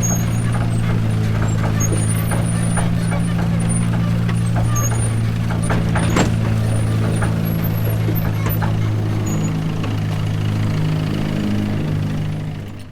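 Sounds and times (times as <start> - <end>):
engine humming: 0.0 - 12.9.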